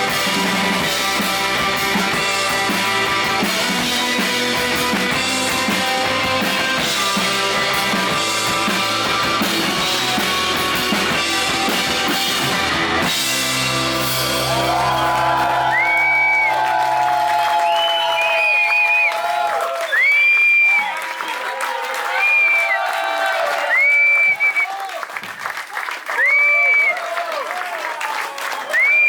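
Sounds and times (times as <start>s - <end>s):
held guitar chords: 0.0s - 17.0s
live rock band: 0.0s - 17.8s
drum kit: 0.0s - 18.2s.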